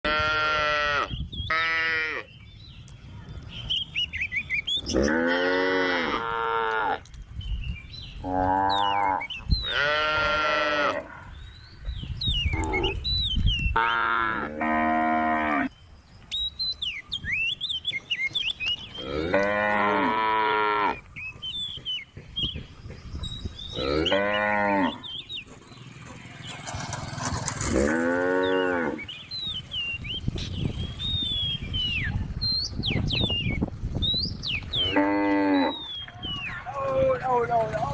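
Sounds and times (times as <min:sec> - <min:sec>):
cows mooing: 0:00.0 - 0:02.3, 0:04.8 - 0:07.1, 0:08.2 - 0:11.3, 0:12.5 - 0:13.0, 0:13.8 - 0:15.7, 0:19.0 - 0:21.1, 0:23.7 - 0:25.2, 0:27.6 - 0:29.2, 0:34.7 - 0:35.9.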